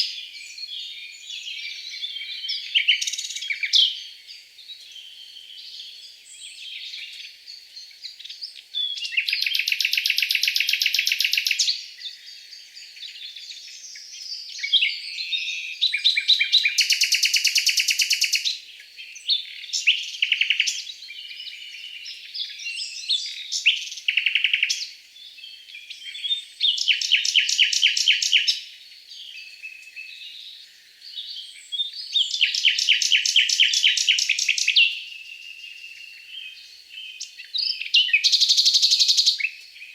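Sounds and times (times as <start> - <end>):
bird chirps and whistles: 13.9 - 18.5, 31.5 - 39.6.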